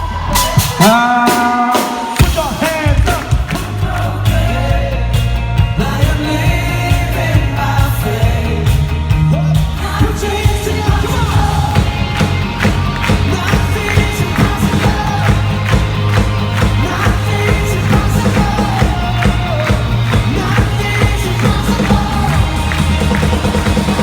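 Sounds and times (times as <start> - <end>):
band playing loud rock music: 0.0 - 24.0
person singing: 9.4 - 24.0.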